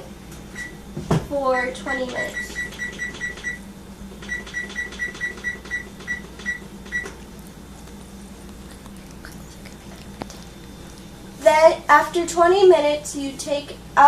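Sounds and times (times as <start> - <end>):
short high oven beeps: 0.5 - 0.8, 1.6 - 3.6, 4.2 - 7.1.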